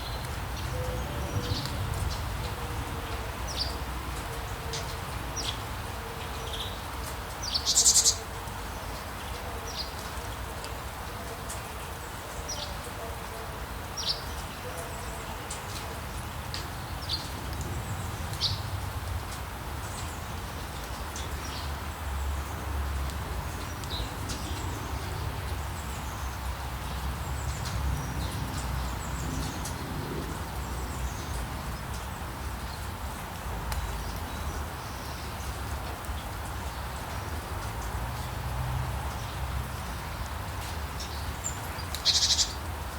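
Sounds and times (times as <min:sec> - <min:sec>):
low town rumble: 0:00.0 - 0:06.4, 0:14.4 - 0:42.0
steady rain: 0:00.0 - 0:42.9.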